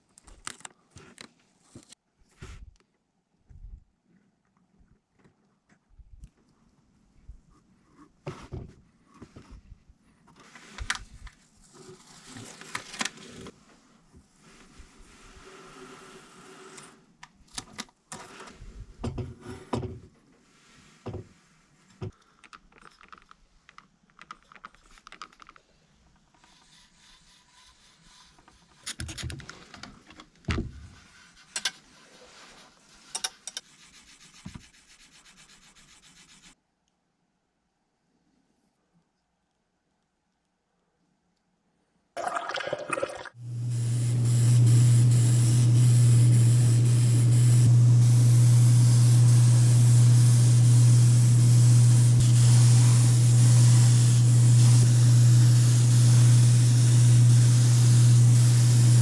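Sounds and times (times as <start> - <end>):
rubbing or sanding: 26.4 - 28.8, 30.9 - 36.6.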